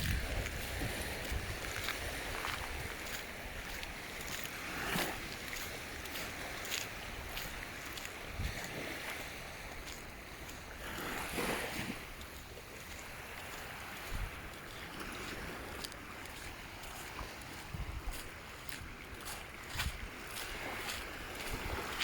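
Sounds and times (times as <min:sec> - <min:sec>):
wind buffets on microphone: 0:00.0 - 0:09.9, 0:12.9 - 0:15.8, 0:16.8 - 0:19.0, 0:19.6 - 0:22.0
small waves washing in shallows: 0:00.0 - 0:22.0.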